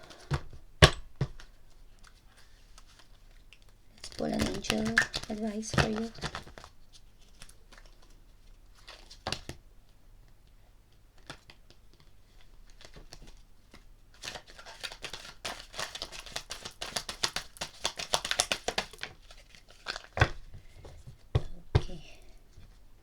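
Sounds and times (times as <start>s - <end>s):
cards shuffling and slapping: 0.0s - 9.6s, 11.1s - 21.9s.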